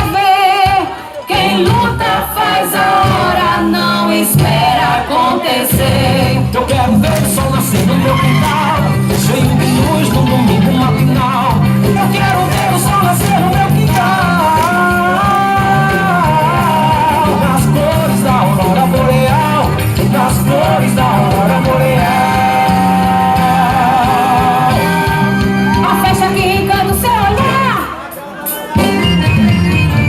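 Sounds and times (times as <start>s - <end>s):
loud dance song with held vocals: 0.0s - 28.3s
repeating bass line: 1.4s - 27.9s.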